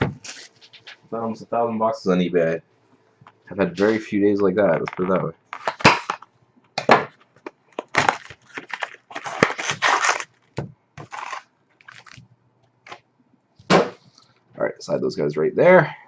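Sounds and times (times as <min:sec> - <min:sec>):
foil packs tearing and crinkling: 0:07.7 - 0:12.2.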